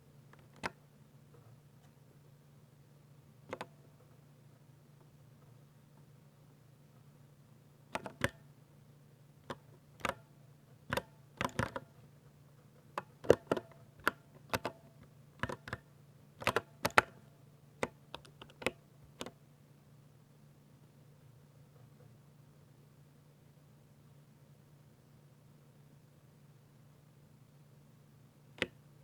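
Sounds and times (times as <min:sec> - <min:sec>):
typing on mechanical keyboard: 0:03.5 - 0:03.7, 0:08.0 - 0:08.4, 0:10.9 - 0:11.9, 0:13.0 - 0:14.8, 0:15.4 - 0:15.8, 0:16.4 - 0:17.2, 0:17.8 - 0:19.4.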